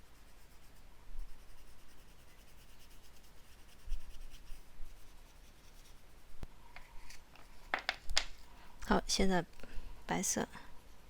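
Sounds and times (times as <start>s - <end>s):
colouring strokes on paper: 0.0s - 7.1s.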